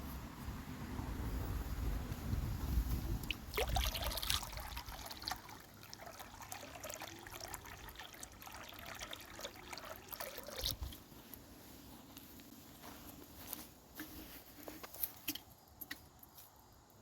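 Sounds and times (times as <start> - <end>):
water pouring into bird bath: 3.2 - 11.0.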